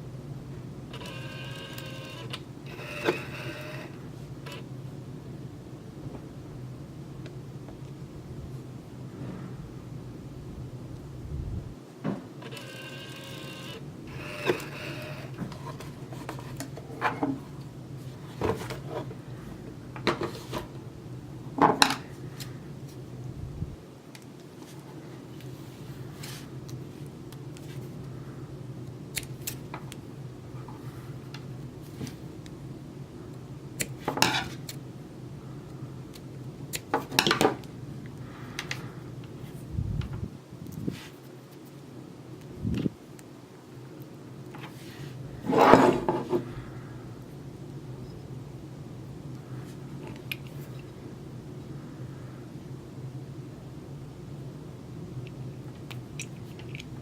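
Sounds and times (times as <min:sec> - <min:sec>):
steady low hum: 0:00.0 - 0:57.0.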